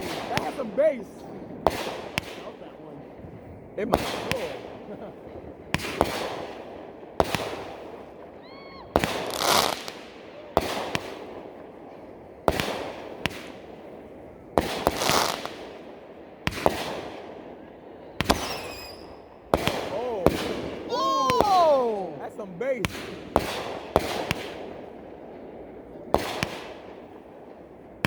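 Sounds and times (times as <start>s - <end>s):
fireworks crackle and hiss: 0.0s - 17.6s, 18.2s - 28.0s
fireworks bangs: 0.0s - 28.0s
firework whistle: 8.4s - 9.8s, 18.3s - 19.3s.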